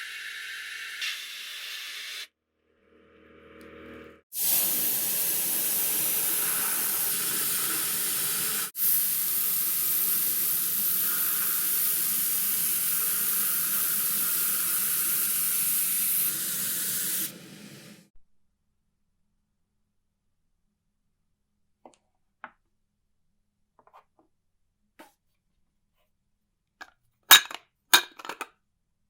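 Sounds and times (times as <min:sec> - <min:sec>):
spraying hiss: 0:04.4 - 0:18.1.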